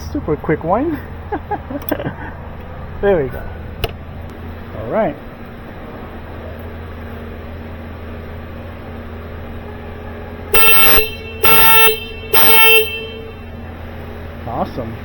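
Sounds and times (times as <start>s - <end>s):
car alarm horn blasts: 10.5s - 13.6s.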